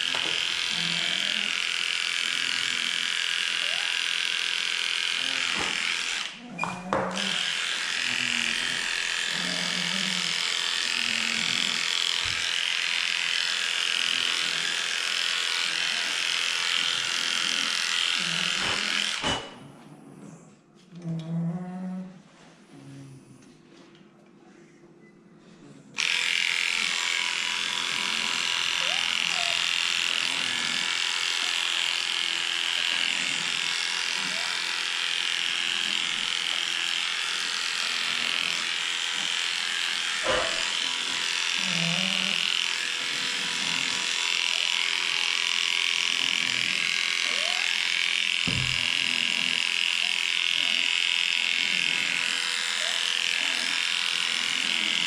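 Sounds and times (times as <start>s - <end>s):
electric clippers running: 0.0s - 19.6s, 26.0s - 55.0s.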